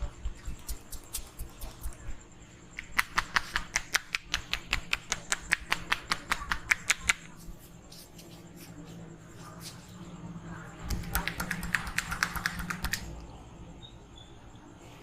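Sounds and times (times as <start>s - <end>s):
hands slapping and tapping: 2.8s - 7.3s, 10.9s - 13.1s.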